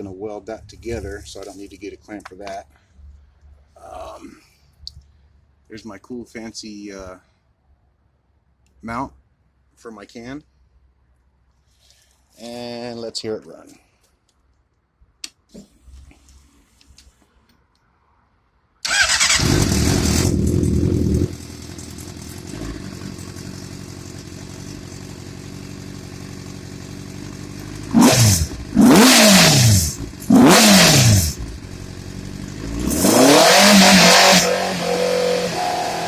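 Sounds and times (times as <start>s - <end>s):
motorcycle engine revving: 18.9s - 36.0s.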